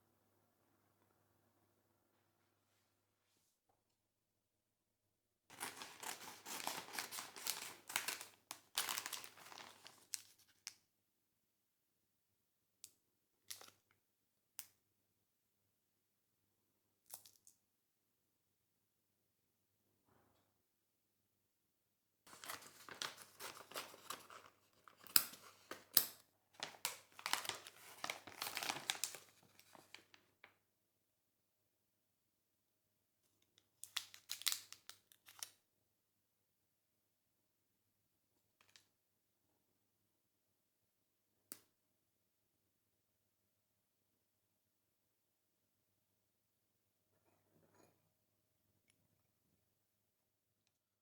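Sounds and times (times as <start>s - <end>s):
packaging crinkling: 5.5s - 10.7s, 22.3s - 26.0s, 26.6s - 30.2s.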